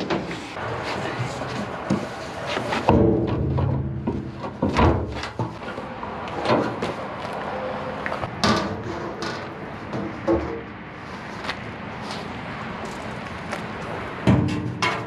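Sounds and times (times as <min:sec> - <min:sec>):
heavy metal knocks and clunks: 0:02.8 - 0:07.0, 0:08.3 - 0:10.8, 0:14.2 - 0:15.0.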